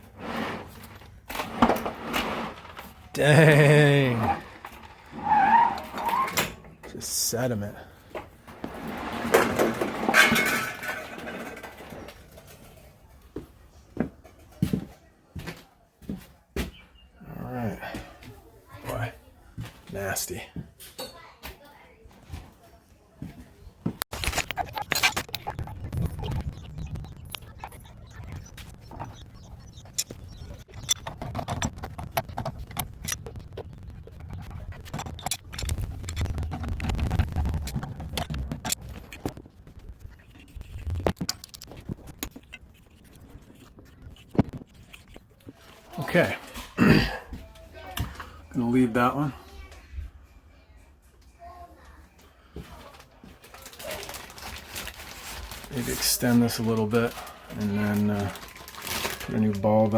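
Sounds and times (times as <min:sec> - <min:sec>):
sediment rattling inside a tank: 0:08.8 - 0:12.6, 0:24.1 - 0:46.8, 0:52.9 - 0:59.9.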